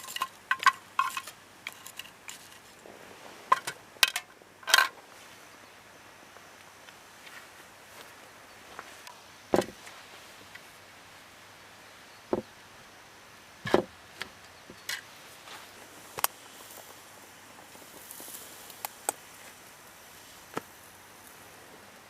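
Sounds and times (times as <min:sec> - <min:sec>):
objects knocking and clicking: 0:00.0 - 0:02.6, 0:03.5 - 0:05.0.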